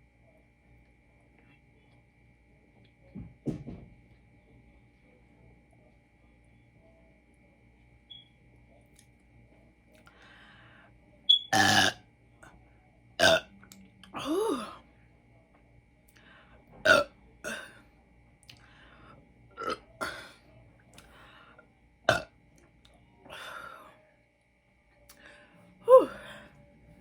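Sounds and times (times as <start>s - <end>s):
woman belching: 11.5s - 12.0s, 13.2s - 13.5s, 14.2s - 14.8s, 16.9s - 17.8s, 19.6s - 20.3s, 22.1s - 22.3s, 25.9s - 26.2s.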